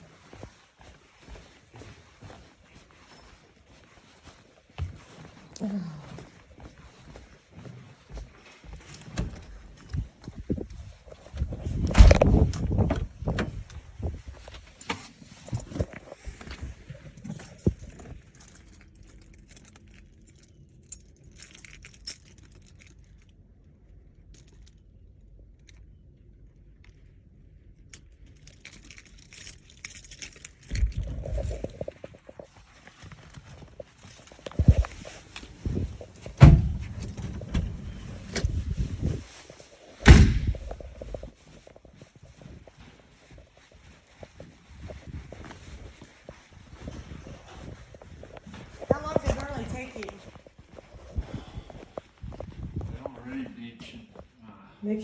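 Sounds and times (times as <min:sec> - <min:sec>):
keys jangling: 0:08.7 - 0:13.8, 0:17.0 - 0:23.3, 0:27.9 - 0:32.5
door slamming: 0:11.8 - 0:13.5, 0:36.4 - 0:38.5, 0:40.0 - 0:40.7.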